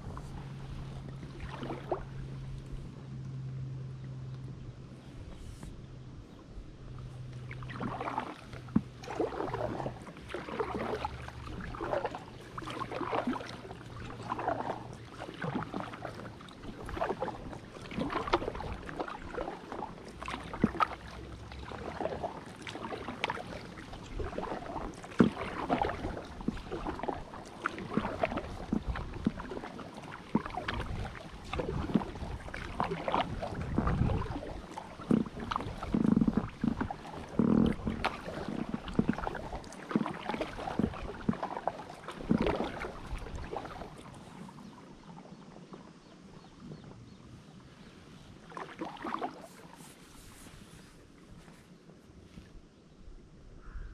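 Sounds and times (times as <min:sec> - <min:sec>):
kayak paddle splashing in water: 0:00.0 - 0:03.2, 0:06.9 - 0:52.5
paddle knocking: 0:07.0 - 0:44.4.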